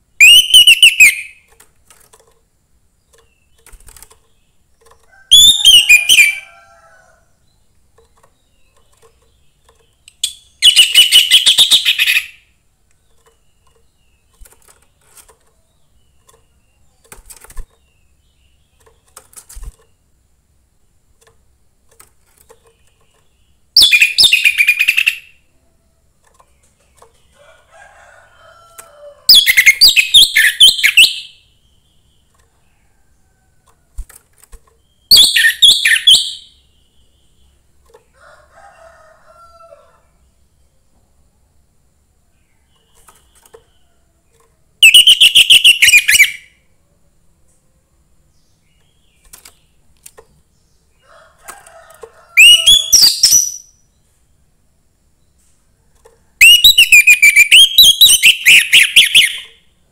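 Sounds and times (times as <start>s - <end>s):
thrush singing chattering notes: 8.0s - 12.4s, 44.8s - 46.5s, 52.4s - 53.7s, 56.4s - 59.6s.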